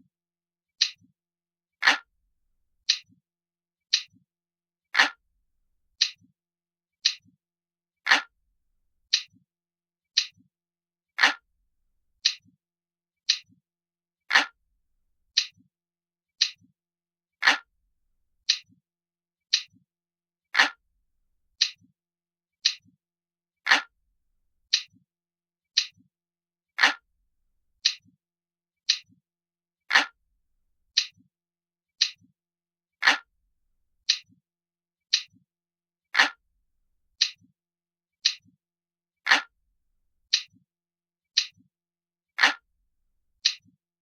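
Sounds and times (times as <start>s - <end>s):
timer clock ticking: 0.8s - 1.1s, 2.8s - 3.2s, 3.9s - 4.2s, 6.0s - 6.3s, 7.0s - 7.4s, 9.1s - 9.4s, 10.2s - 10.5s, 12.2s - 12.6s, 13.3s - 13.6s, 15.3s - 15.7s, 16.4s - 16.7s, 27.8s - 28.2s, 28.9s - 29.2s, 32.0s - 32.3s, 34.0s - 34.4s, 35.2s - 35.4s, 37.2s - 37.5s, 38.2s - 38.6s, 40.3s - 40.6s, 41.4s - 41.7s, 43.4s - 43.8s.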